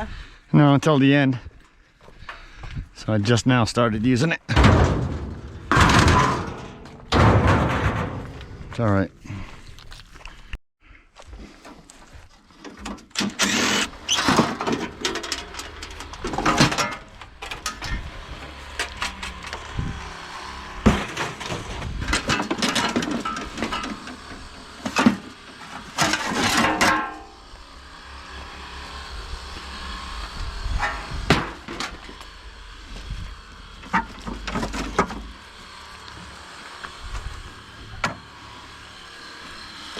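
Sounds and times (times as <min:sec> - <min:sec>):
loud metal bangs: 0:04.5 - 0:09.2, 0:18.6 - 0:24.0
metal clanks and rattles: 0:04.5 - 0:09.2, 0:12.6 - 0:27.4, 0:33.8 - 0:35.4.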